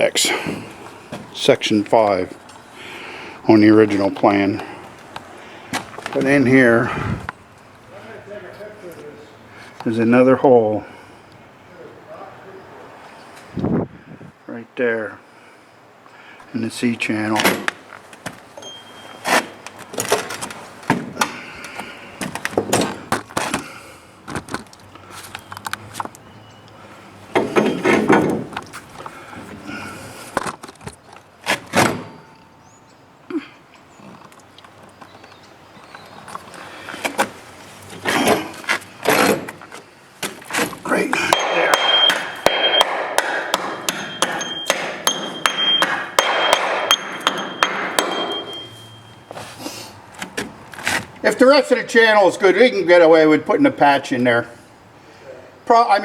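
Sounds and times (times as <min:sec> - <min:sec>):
hammer blows on steel: 0:41.2 - 0:49.4
scraping rustle: 0:48.8 - 0:51.2.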